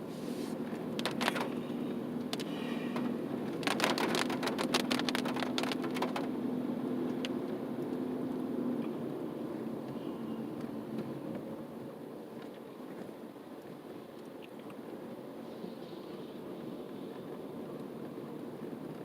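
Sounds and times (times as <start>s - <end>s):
engine and road noise in car: 0.0s - 19.0s
rapid crackles: 0.4s - 6.5s.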